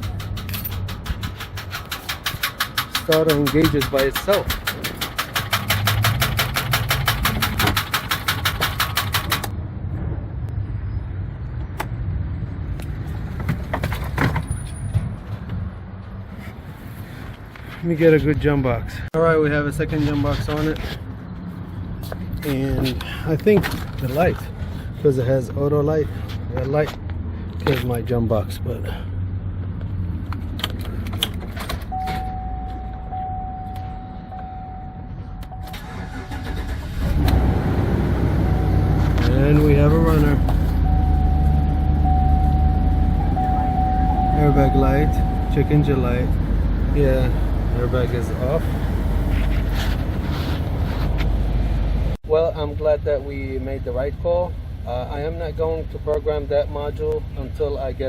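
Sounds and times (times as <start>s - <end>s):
sharp clicks: 0.0s - 9.6s
van engine starting and running: 0.0s - 9.7s, 28.8s - 58.0s
steady high tone: 32.0s - 35.8s, 40.7s - 46.3s.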